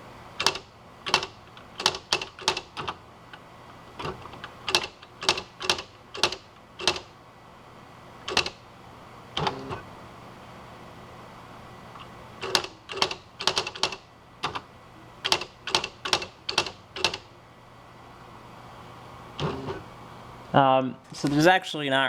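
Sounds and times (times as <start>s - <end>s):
electric typewriter key strikes: 0.3s - 7.2s, 8.2s - 8.7s, 9.3s - 9.9s, 12.0s - 17.3s, 19.4s - 19.9s.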